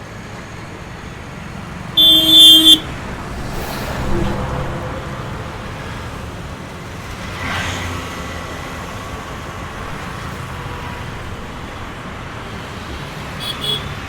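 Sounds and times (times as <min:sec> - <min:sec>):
road traffic rumble: 0:00.0 - 0:14.0
vehicle passing close by: 0:01.6 - 0:11.8.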